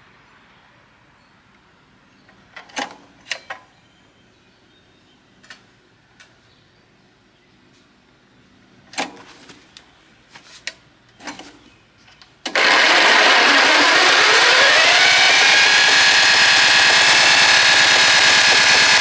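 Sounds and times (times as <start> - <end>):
wood chipper engine running: 12.5 - 19.0.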